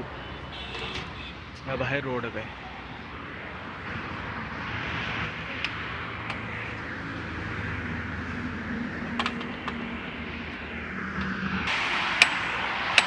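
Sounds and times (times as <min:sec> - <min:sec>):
sharp metallic clicks and taps: 0:09.1 - 0:09.8.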